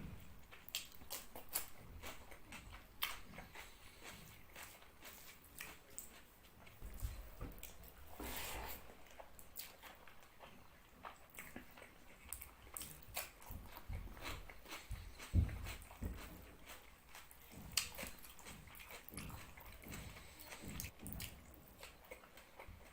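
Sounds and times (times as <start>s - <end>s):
chewing and lip-smacking: 0.1s - 8.2s, 8.8s - 22.9s.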